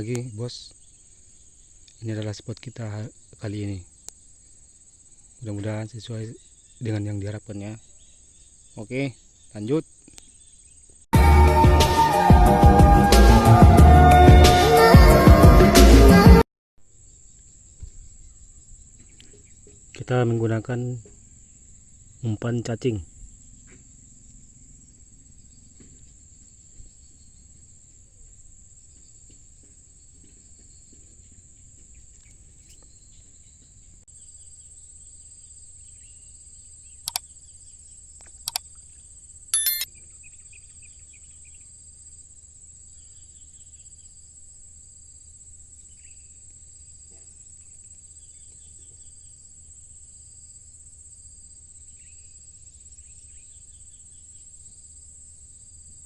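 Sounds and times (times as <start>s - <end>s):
insects shrilling: 0.0s - 11.0s, 35.9s - 37.4s, 38.2s - 39.0s.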